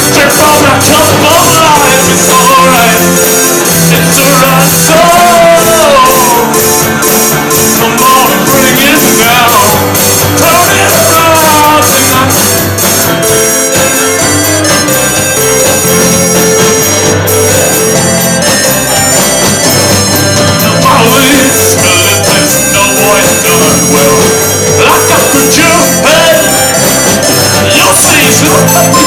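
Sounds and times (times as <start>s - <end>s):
lead vocal singing: 0.0s - 12.7s, 20.6s - 29.0s
rock band playing: 0.0s - 29.0s.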